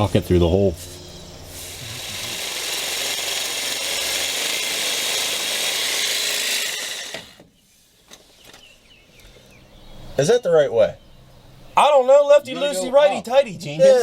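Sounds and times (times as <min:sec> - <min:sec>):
power tool running: 0:01.2 - 0:07.4.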